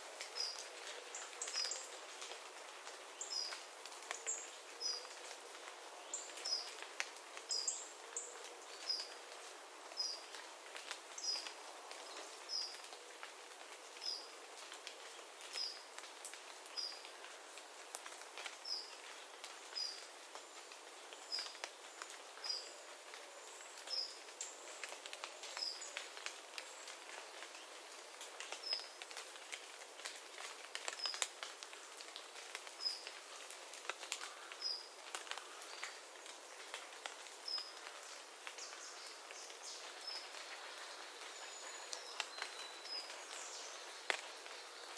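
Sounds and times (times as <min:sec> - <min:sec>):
faint steady hiss: 0:00.0 - 0:44.9
light ticks: 0:44.1 - 0:44.3.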